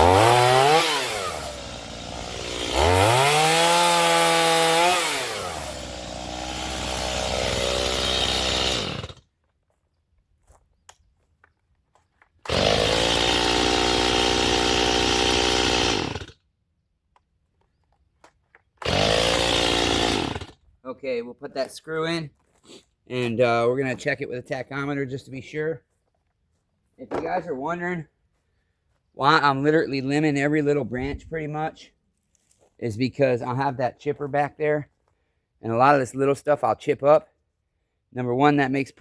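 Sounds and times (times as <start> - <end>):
chainsaw revving: 0.0 - 9.2, 12.4 - 16.4, 18.8 - 20.6.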